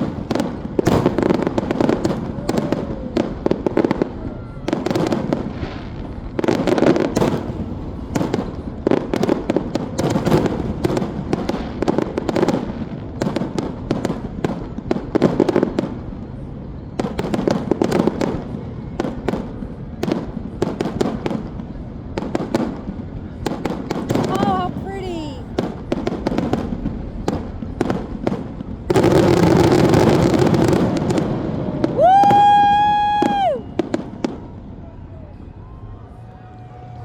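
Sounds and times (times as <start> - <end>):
fireworks cracking and banging: 0.0 - 35.0.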